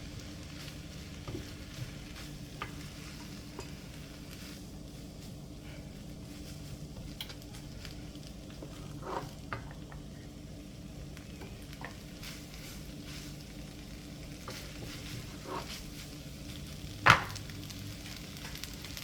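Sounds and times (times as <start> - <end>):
food sizzling in a frying pan: 0.0 - 19.0
utensil scraping and clicking on pan: 0.6 - 4.6, 8.5 - 10.0, 14.3 - 17.5.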